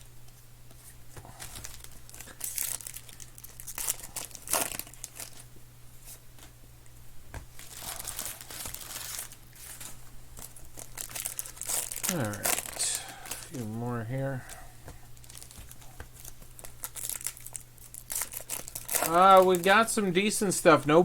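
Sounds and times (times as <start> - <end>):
low steady hum: 0.0 - 21.0
card pack wrappers tearing: 1.3 - 5.5, 7.6 - 14.4, 15.1 - 20.0.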